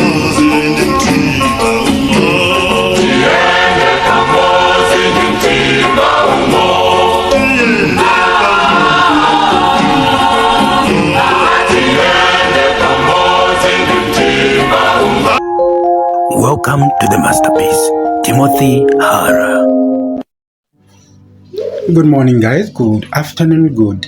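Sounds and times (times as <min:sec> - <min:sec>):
gospel choir singing: 0:00.0 - 0:15.4.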